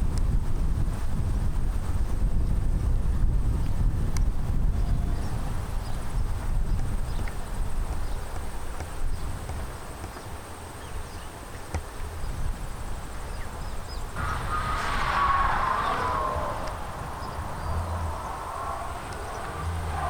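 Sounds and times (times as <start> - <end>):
wind rumbling on microphone: 0.0 - 20.0
whistling falling in pitch: 14.2 - 20.0.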